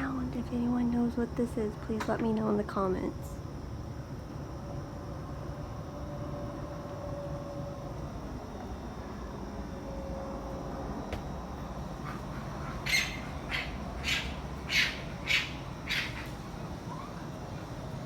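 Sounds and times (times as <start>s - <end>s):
steady low rumble: 2.7s - 18.0s
animal harsh raspy calls: 11.9s - 18.0s.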